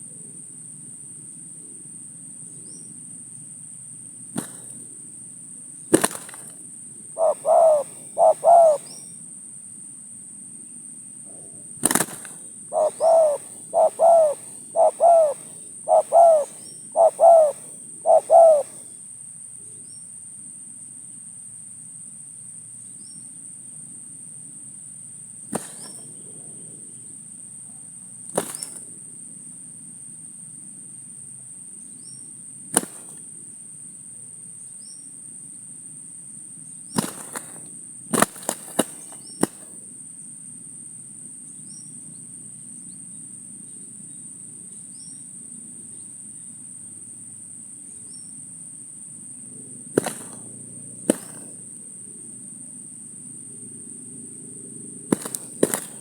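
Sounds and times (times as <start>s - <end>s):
doves cooing: 6.0s - 9.2s, 11.3s - 19.0s, 25.5s - 26.6s, 49.6s - 51.8s.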